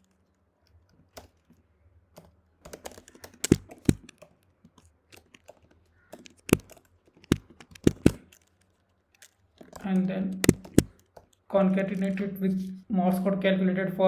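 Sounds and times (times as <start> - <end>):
typing on computer keyboard: 1.0 - 1.6, 2.2 - 12.3.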